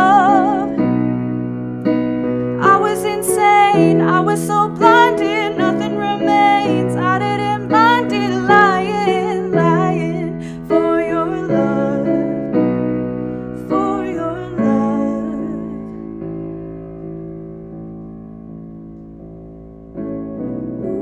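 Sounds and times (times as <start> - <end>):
woman singing with vibrato: 0.0 - 0.9, 2.6 - 12.4, 13.6 - 15.9
piano accompaniment: 0.0 - 21.0.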